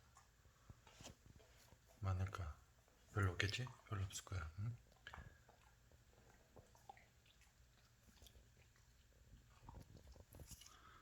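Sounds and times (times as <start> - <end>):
dog chewing wetly: 2.7 - 11.0.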